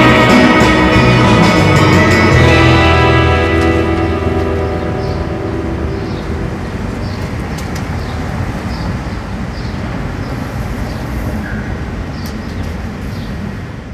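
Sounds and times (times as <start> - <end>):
traffic rumble: 0.0 - 13.9.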